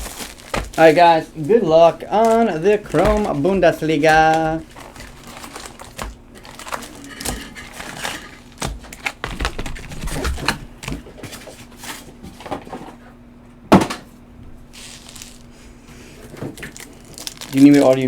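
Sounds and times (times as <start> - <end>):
cards clicking and rustling: 0.0 - 12.0, 16.3 - 18.0.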